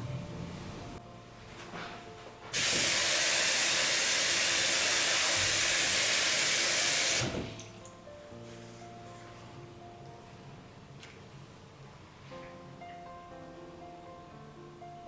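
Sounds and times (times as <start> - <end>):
loud steady hiss: 2.5 - 7.4.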